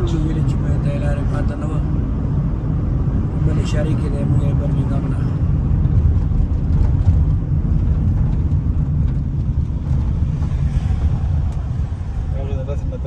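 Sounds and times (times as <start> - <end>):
car road rumble inside cabin: 0.0 - 13.0.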